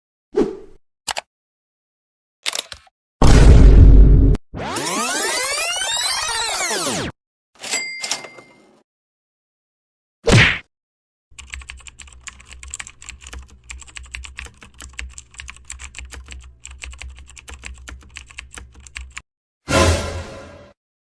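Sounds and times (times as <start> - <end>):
sudden loud hit: 3.2 - 4.4
computer keyboard typing: 11.3 - 19.2.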